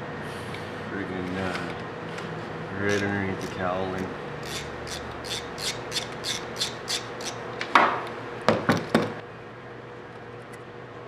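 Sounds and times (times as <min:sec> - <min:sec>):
ratchet wrench rasping: 0:02.8 - 0:03.8, 0:04.4 - 0:07.4.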